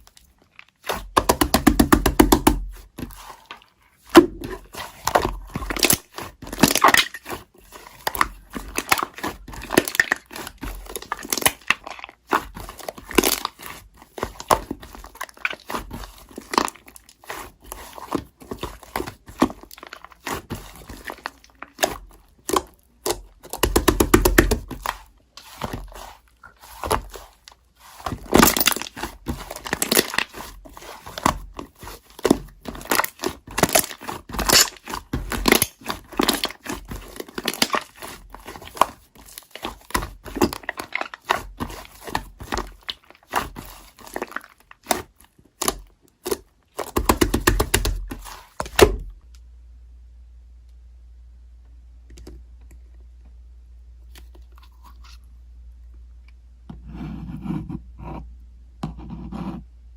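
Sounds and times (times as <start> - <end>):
crinkling rustles: 2.6 - 49.2.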